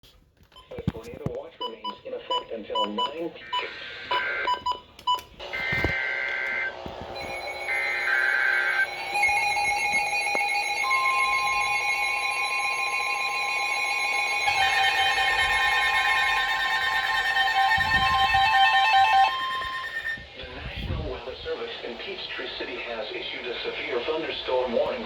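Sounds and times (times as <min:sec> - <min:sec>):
two-note attention signal: 0:07.2 - 0:20.2.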